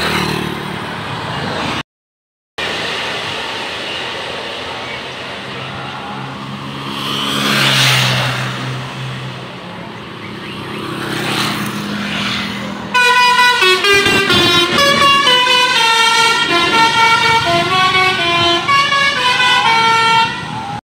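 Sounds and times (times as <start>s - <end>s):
passing road traffic: 0.0s - 1.8s, 2.6s - 20.8s
multi-tone musical air horn: 12.9s - 20.6s.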